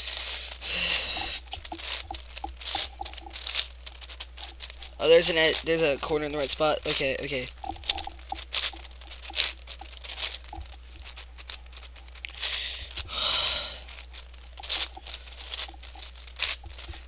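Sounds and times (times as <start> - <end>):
cube pieces scraping rattle: 0.0 - 17.0
puzzle cube clicking: 0.5 - 17.0.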